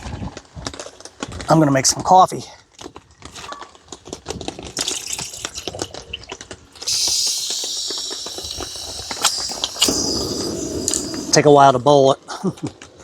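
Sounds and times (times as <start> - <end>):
sharp click: 6.8 - 11.4
gas stove hissing: 6.8 - 12.4.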